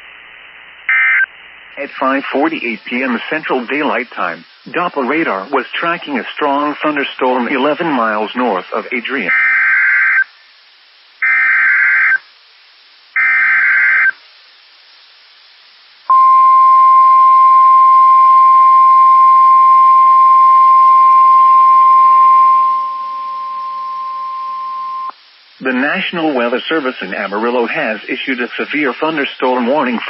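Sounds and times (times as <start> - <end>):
steady alarm tone: 11.2 - 12.2, 13.2 - 14.2, 16.1 - 25.1
buzzy digital data bursts: 13.1 - 14.2.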